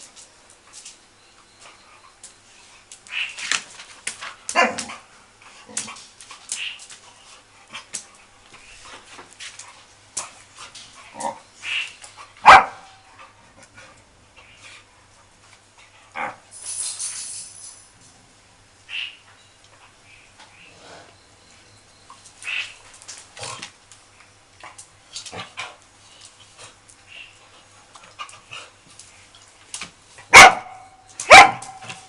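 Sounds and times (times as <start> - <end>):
dogs barking and yipping: 11.2 - 13.3, 30.3 - 32.0.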